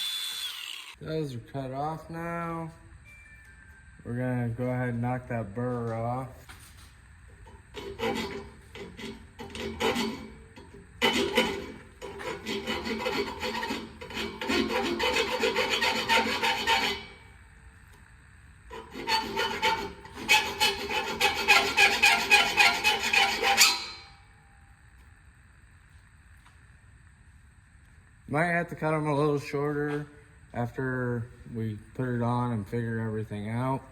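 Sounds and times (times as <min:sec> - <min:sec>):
file rasping on metal: 0:07.8 - 0:17.2, 0:18.7 - 0:24.1.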